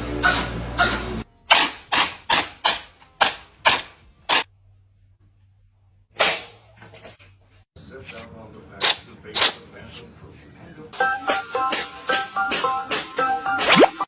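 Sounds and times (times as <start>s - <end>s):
cat sneezing: 8.8s - 9.6s.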